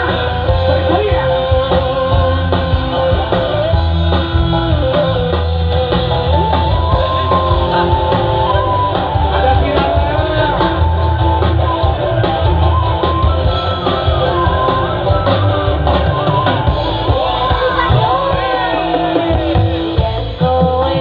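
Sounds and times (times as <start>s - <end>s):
loud music with heavy bass: 0.0s - 21.0s
person singing: 17.0s - 21.0s.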